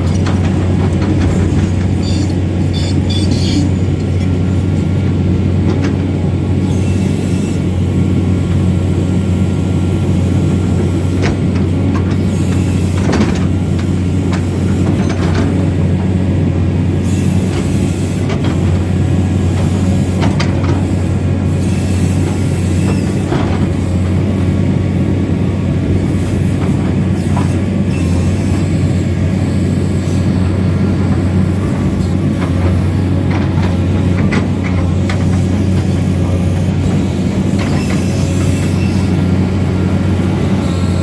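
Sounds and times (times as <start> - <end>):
excavator engine running: 0.0 - 41.0.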